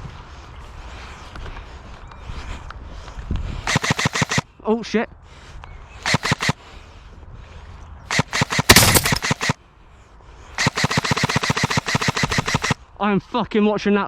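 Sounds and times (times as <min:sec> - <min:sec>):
airsoft gun bursts: 0:03.7 - 0:04.4, 0:06.0 - 0:06.6, 0:08.1 - 0:09.6, 0:10.6 - 0:12.8.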